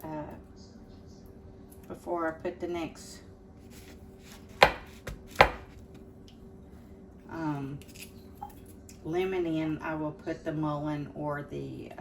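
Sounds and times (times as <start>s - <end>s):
knife chopping on cutting board: 4.2s - 5.8s.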